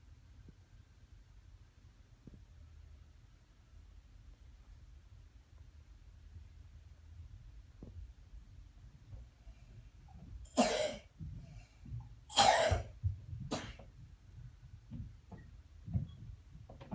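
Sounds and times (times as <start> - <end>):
person coughing: 10.6 - 11.1, 12.3 - 12.9.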